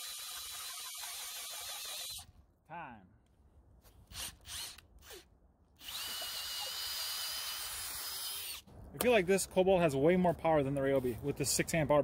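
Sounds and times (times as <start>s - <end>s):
cordless drill motor whining: 0.0s - 2.2s, 4.1s - 8.6s.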